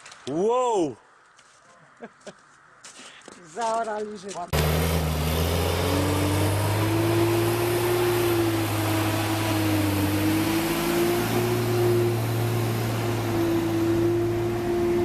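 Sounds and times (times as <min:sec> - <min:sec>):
engine running: 0:04.5 - 0:15.0.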